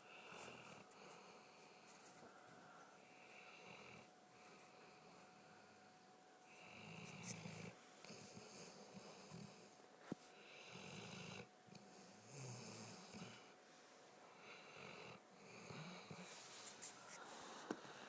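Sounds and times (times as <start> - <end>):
dog snoring: 3.4 - 5.2, 6.5 - 9.7, 10.4 - 13.6, 14.4 - 16.4.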